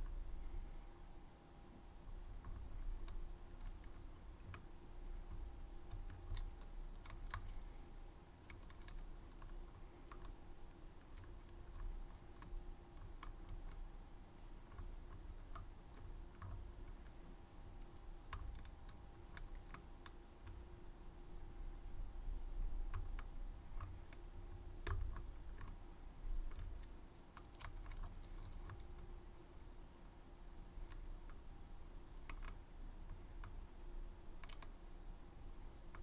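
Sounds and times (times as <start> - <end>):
faint steady hum: 0.0 - 36.0.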